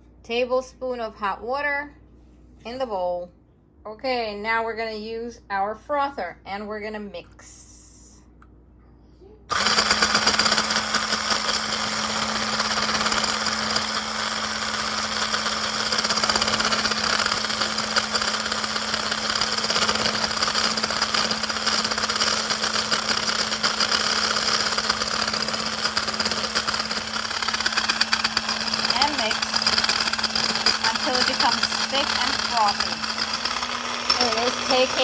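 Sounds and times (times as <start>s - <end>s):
electric milk frother whirring: 9.5s - 35.0s.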